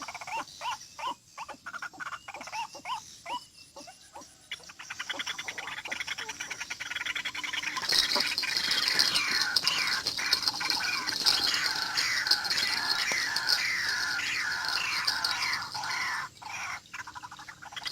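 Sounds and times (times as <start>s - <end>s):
waterhen rattling calls: 4.5s - 17.9s
waterhen falling calls: 5.1s - 17.9s.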